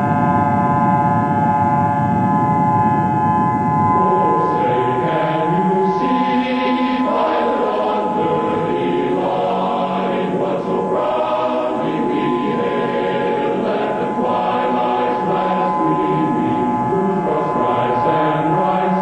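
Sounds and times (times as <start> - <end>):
two-note electronic tone: 0.0 - 19.0
choir singing: 4.0 - 19.0.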